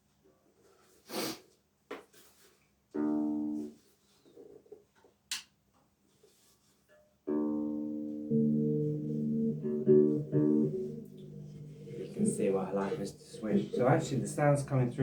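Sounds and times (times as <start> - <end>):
plucked guitar note: 7.3 - 14.1.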